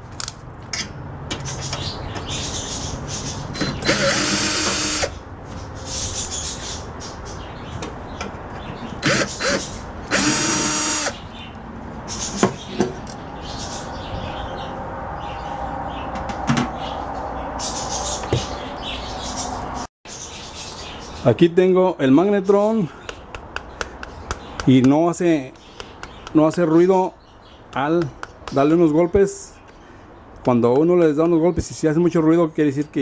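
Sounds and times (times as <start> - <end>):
power drill running: 3.7 - 5.1, 9.0 - 11.2.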